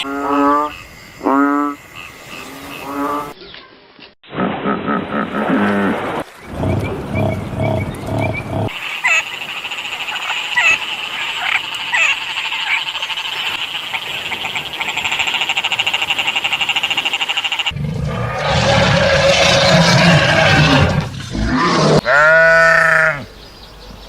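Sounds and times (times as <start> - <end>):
frogs croaking: 0.0 - 3.4, 6.3 - 21.3
frogs chirping and trilling: 0.0 - 3.6, 6.3 - 21.3.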